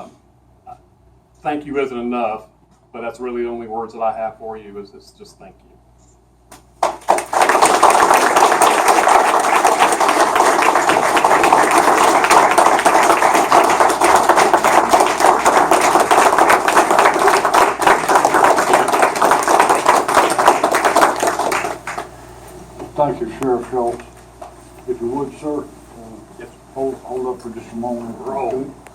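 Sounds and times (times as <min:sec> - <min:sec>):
audience applauding: 0:06.8 - 0:22.2.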